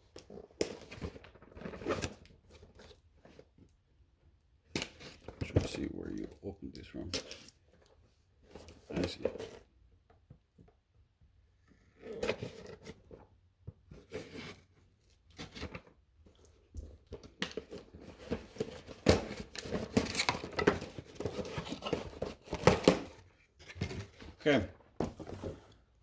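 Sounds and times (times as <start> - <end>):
packaging ripping and crinkling: 17.5 - 23.1.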